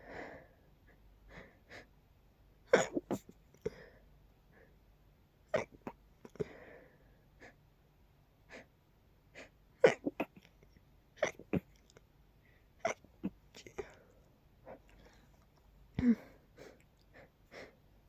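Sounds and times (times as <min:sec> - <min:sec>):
person sneezing stifled: 0:02.7 - 0:03.3
soft breaths: 0:03.2 - 0:04.9, 0:06.3 - 0:07.7, 0:11.7 - 0:18.0.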